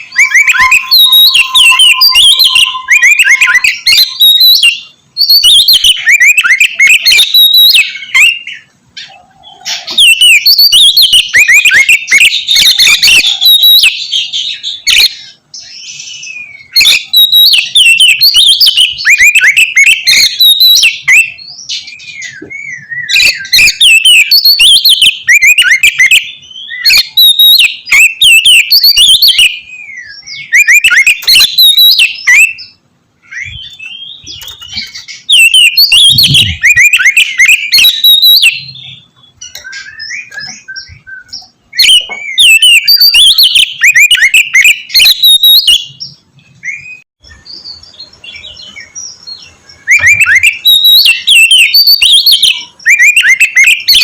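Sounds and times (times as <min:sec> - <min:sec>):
bird singing loudly: 0:00.0 - 0:54.0.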